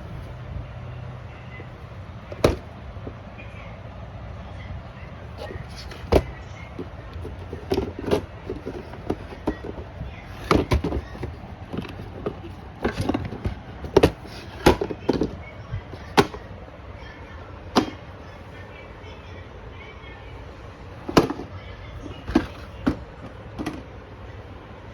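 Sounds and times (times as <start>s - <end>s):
plastic parts clicking and knocking: 2.3s - 3.2s, 5.4s - 16.5s, 17.8s - 18.0s, 21.0s - 23.9s.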